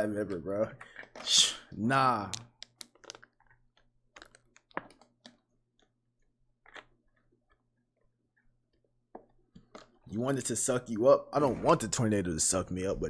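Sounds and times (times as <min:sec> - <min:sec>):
keyboard and mouse clicks: 0:02.3 - 0:03.3.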